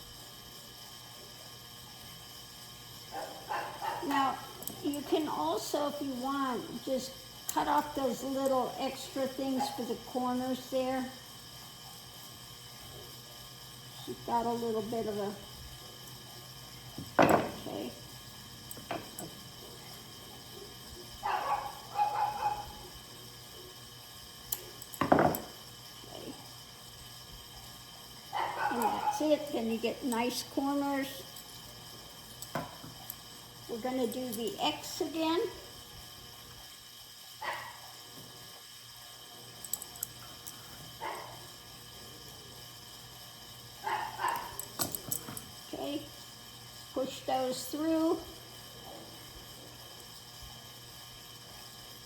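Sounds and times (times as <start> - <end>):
fan humming: 0.0 - 52.0.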